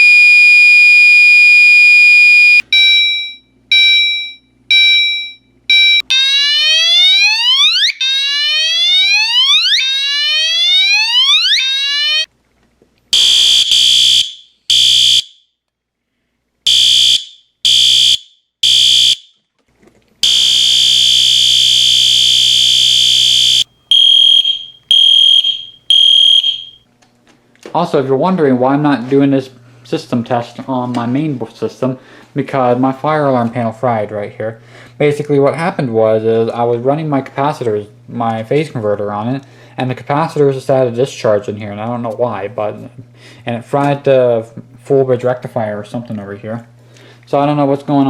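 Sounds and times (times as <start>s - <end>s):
alarm horn blasts: 13.2s - 15.4s, 16.7s - 19.2s, 20.2s - 26.8s
short beeps: 23.2s - 26.8s.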